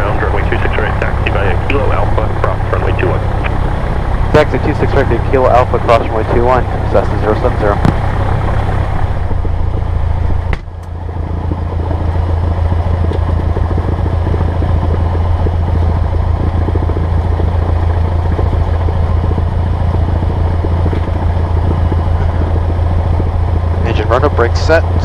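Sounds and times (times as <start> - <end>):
propeller engine drone: 0.0 - 25.0.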